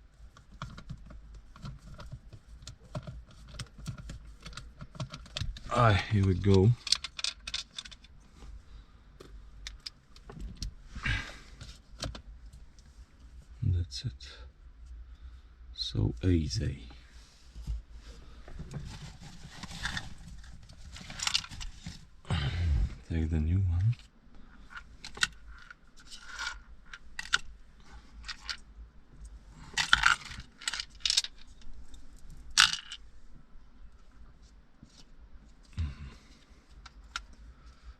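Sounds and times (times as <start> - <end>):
scraping rustle: 17.1 - 22.2, 24.6 - 28.6.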